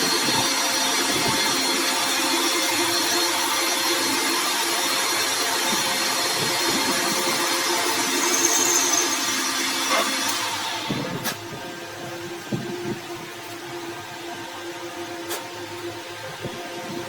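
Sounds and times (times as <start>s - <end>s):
power tool machining: 0.0s - 11.1s.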